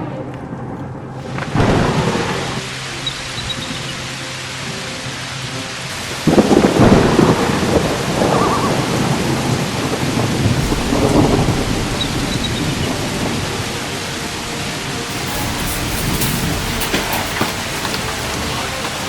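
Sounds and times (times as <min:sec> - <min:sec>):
heavy rain falling: 0:00.0 - 0:19.0
thunder clap rumbling: 0:06.2 - 0:19.0.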